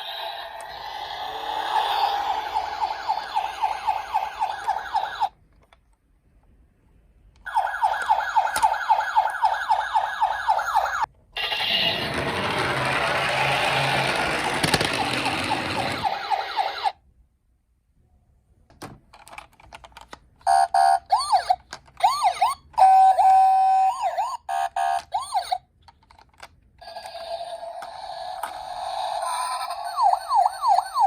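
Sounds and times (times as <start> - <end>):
toy electronic siren wails: 0.0 - 5.3, 7.5 - 17.0, 20.5 - 25.6, 26.8 - 31.0.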